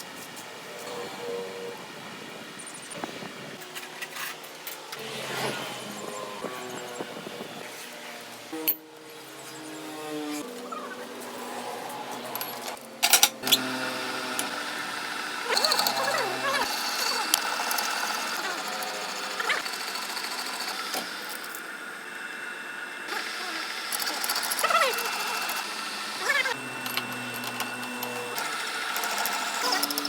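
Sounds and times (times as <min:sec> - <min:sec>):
metal lathe humming: 0:13.4 - 0:30.0.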